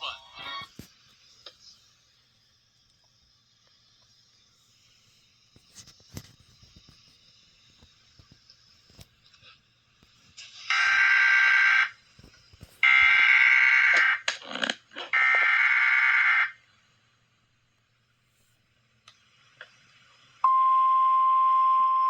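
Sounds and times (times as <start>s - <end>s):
harsh buzzy data bursts: 10.6s - 12.0s, 15.1s - 16.6s.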